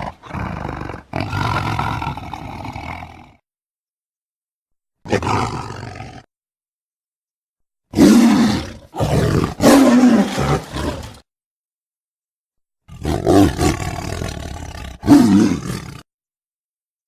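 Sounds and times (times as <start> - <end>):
tiger roaring: 0.0 - 3.4, 5.0 - 6.3, 7.9 - 11.2, 12.9 - 16.0.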